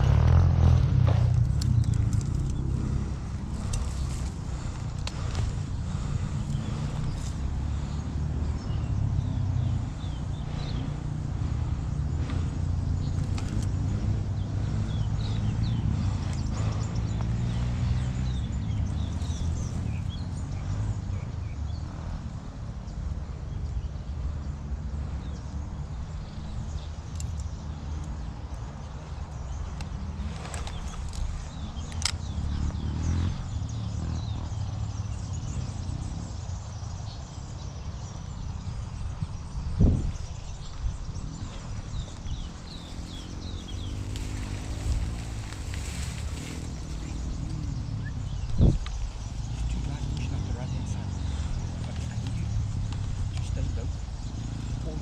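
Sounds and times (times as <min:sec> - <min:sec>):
small birds chirping: 0:00.0 - 0:55.0
steady low rumble: 0:00.0 - 0:55.0
sharp clicks: 0:01.3 - 0:02.8.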